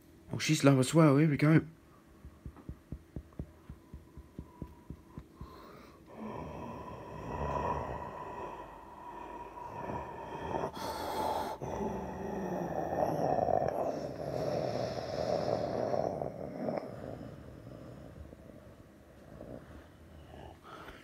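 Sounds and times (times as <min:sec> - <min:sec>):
soft rhythmic thumps: 0:02.1 - 0:06.1.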